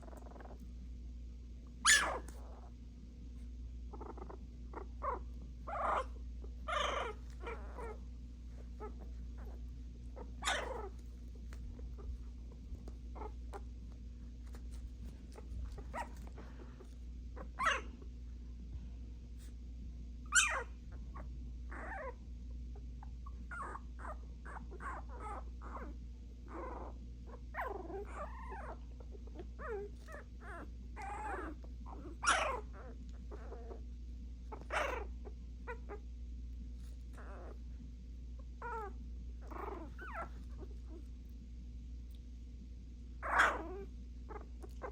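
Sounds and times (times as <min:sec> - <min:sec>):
puppies barking: 0:01.8 - 0:02.4, 0:08.8 - 0:11.0, 0:15.3 - 0:18.0, 0:20.3 - 0:20.8, 0:32.2 - 0:32.7, 0:34.5 - 0:35.8, 0:43.2 - 0:44.9.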